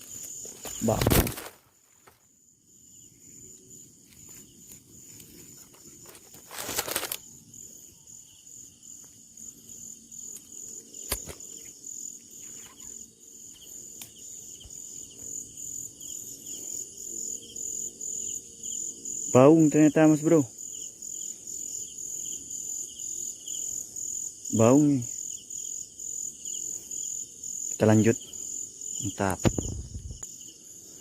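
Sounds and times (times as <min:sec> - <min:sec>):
rustling and handling noise: 0:00.0 - 0:02.3, 0:04.0 - 0:07.4
insects trilling: 0:00.0 - 0:31.0
sharp click: 0:10.3 - 0:11.4.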